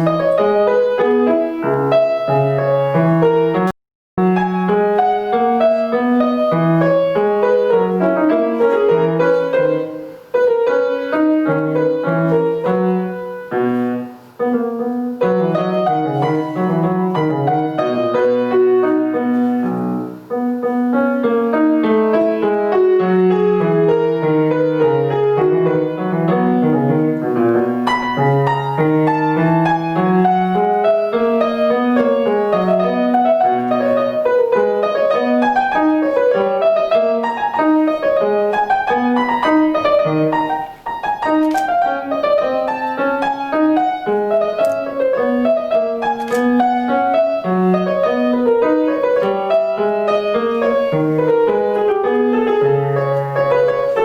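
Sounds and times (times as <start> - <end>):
classical piano piece: 0.0 - 54.0.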